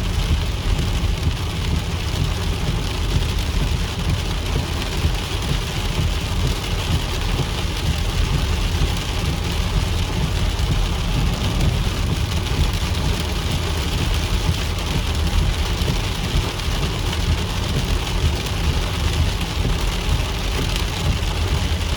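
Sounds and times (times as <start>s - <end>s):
heavy rain falling: 0.0s - 21.9s
low rumble: 0.0s - 21.9s.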